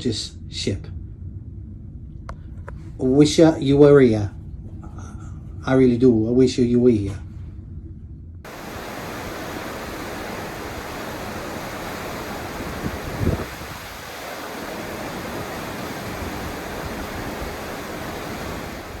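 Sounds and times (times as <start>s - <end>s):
wind and sea rushing: 8.4s - 19.0s
wind buffeting microphone: 8.4s - 19.0s.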